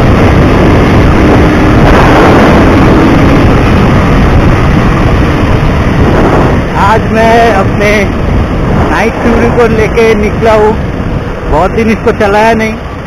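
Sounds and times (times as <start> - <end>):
motorcycle loud exhaust: 0.0 - 7.0
wind buffeting microphone: 0.0 - 13.0.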